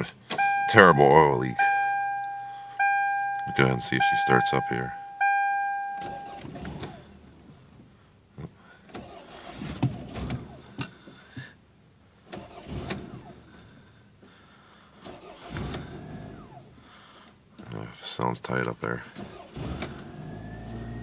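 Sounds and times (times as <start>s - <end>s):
car starter cranking: 0.2s - 7.1s, 8.8s - 10.9s, 12.2s - 13.5s, 15.0s - 16.7s, 19.1s - 21.0s.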